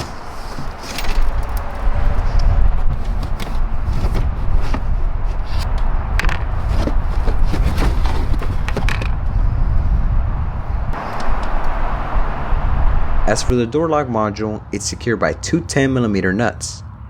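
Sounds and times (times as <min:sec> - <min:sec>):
knocks and clunks of things handled: 0:00.0 - 0:01.8, 0:02.8 - 0:09.3
steady low rumble: 0:00.0 - 0:15.4.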